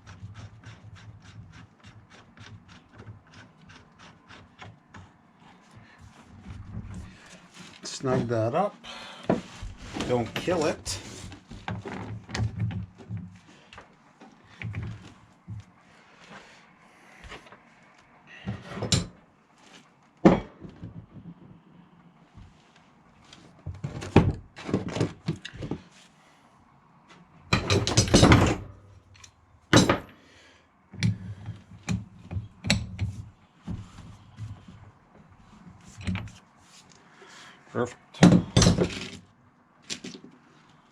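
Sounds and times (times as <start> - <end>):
tools clattering on workbench: 27.6 - 28.7, 29.7 - 30.1.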